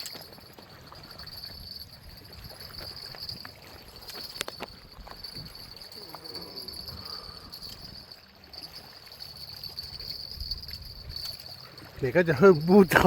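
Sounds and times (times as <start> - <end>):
insects trilling: 5.4 - 13.0.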